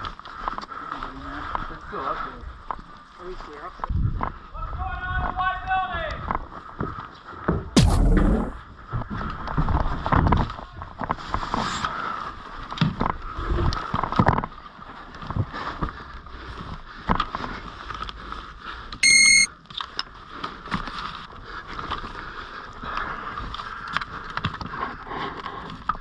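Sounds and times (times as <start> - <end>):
high electronic beep: 19.0 - 19.5.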